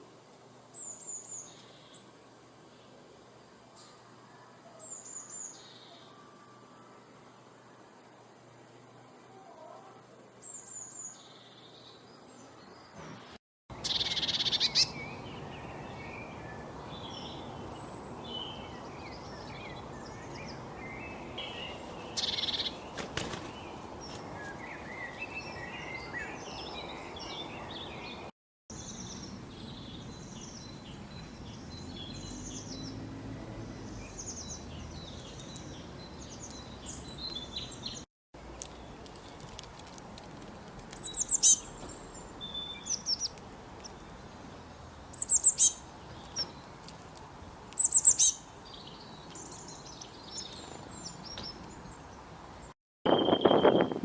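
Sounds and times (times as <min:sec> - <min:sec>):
outdoor ambience hiss: 0:00.0 - 0:52.8
birds chirping and calling: 0:13.7 - 0:38.0, 0:40.9 - 0:44.2, 0:45.1 - 0:46.7, 0:47.8 - 0:52.2.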